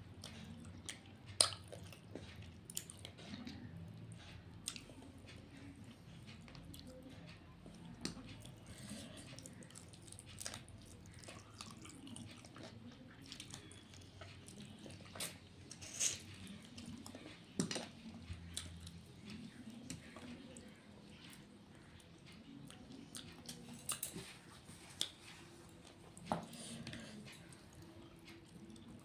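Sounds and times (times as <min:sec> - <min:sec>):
person chewing with mouth smacks: 0:00.2 - 0:03.6, 0:07.8 - 0:21.4.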